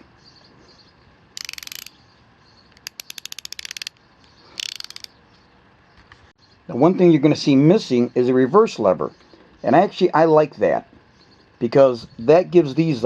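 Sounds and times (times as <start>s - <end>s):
ratchet wrench clicking: 1.4s - 1.9s, 2.7s - 5.1s.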